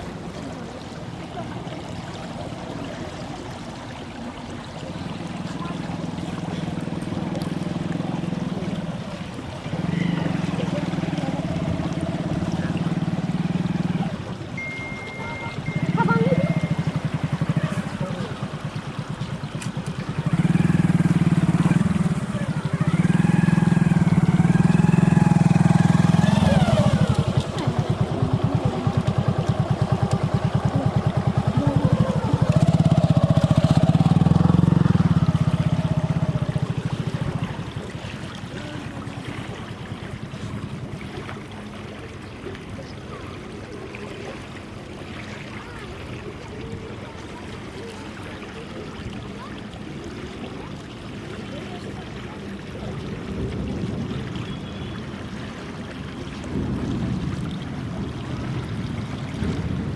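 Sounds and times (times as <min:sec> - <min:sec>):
small engine chugging: 0:01.0 - 0:42.0
wavering higher-pitched sounds: 0:09.8 - 0:37.6.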